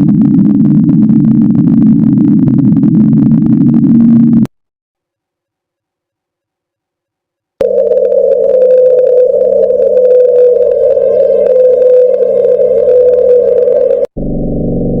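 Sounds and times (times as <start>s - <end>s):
loud low drone: 0.0s - 4.5s, 7.6s - 15.0s
higher-pitched drone: 7.6s - 14.1s.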